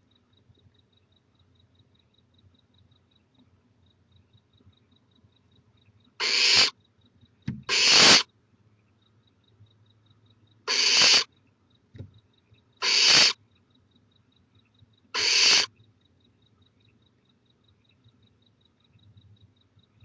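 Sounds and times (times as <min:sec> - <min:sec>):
owl hissing screeches: 0:06.2 - 0:06.7, 0:07.7 - 0:08.3, 0:10.7 - 0:11.3, 0:12.8 - 0:13.4, 0:15.2 - 0:15.7.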